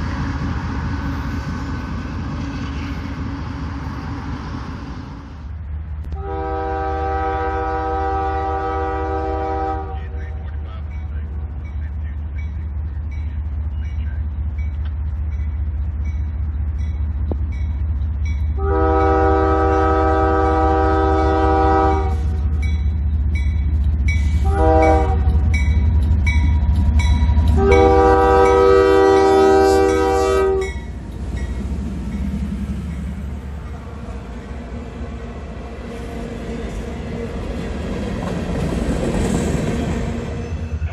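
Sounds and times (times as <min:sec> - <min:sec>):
passing train rumble: 0:00.0 - 0:40.9
locomotive horn blasts: 0:06.1 - 0:10.4, 0:18.6 - 0:22.5, 0:24.4 - 0:25.5, 0:27.5 - 0:30.9.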